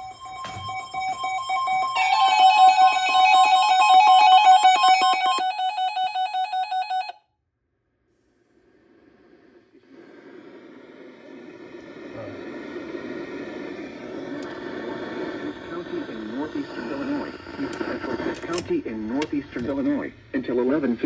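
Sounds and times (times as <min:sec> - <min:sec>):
pulsing electronic alert tone: 0:00.0 - 0:07.1.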